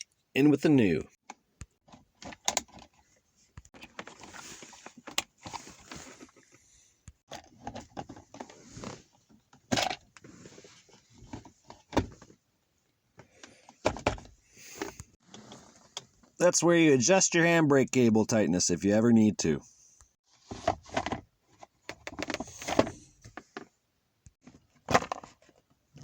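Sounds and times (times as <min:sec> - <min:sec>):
plastic parts clicking and rattling: 0:01.2 - 0:03.0, 0:03.6 - 0:06.6, 0:07.3 - 0:10.3, 0:20.7 - 0:23.7, 0:24.4 - 0:26.0.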